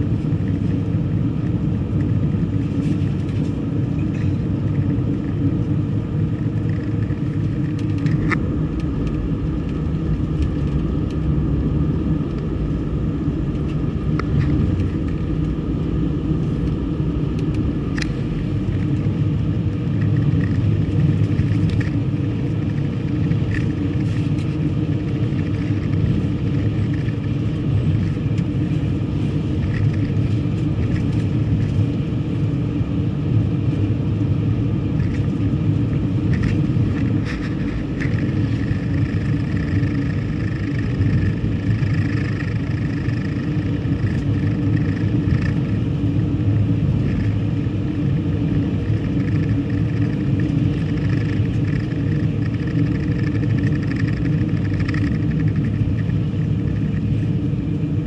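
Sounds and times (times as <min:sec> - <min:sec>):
car road and engine rumble: 0:00.0 - 0:58.0.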